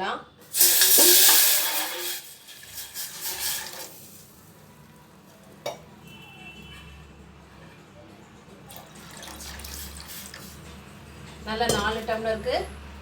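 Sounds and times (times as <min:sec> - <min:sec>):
water poured into a pot: 0:00.5 - 0:04.5, 0:08.7 - 0:10.7.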